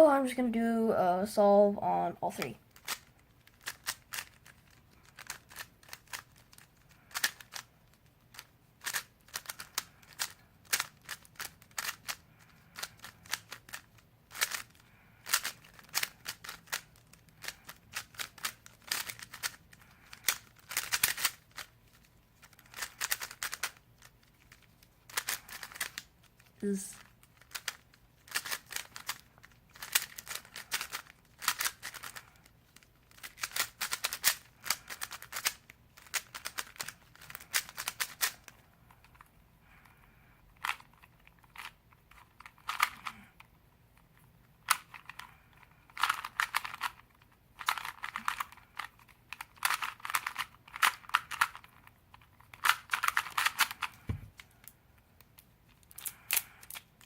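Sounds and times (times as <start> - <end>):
puzzle cube layer clicks: 8.4 - 21.7.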